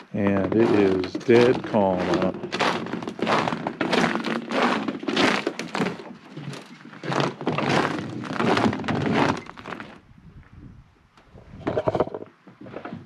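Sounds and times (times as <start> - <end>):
thin ice crunching and cracking: 2.0 - 10.0.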